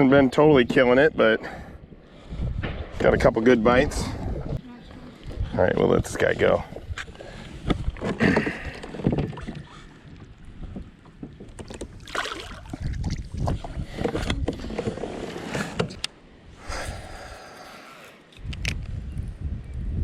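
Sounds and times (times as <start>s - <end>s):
water sloshing against kayak hull: 7.0s - 16.1s.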